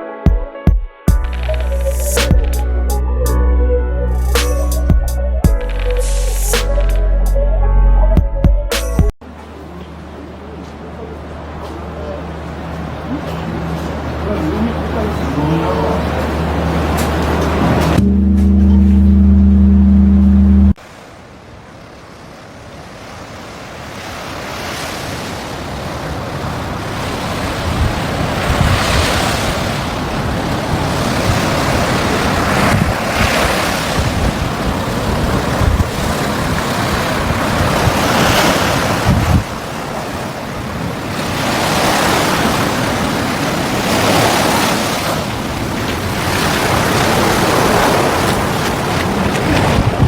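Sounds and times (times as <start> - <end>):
sea waves washing onto shore: 20.8 - 50.0
wind buffeting microphone: 25.8 - 44.4, 45.4 - 50.0.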